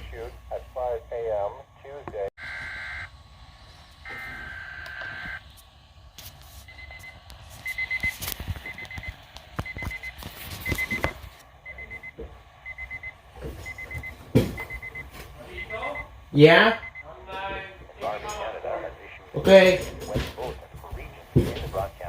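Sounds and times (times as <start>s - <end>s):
electronic alarm beeping: 2.4s - 3.1s, 4.0s - 5.4s, 6.7s - 17.1s.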